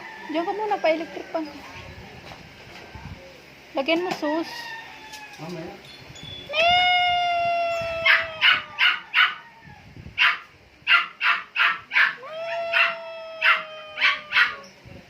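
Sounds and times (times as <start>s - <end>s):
drawn-out falling pitched call: 6.3s - 9.8s, 11.3s - 14.8s
dog barking: 8.0s - 9.4s, 10.2s - 14.6s.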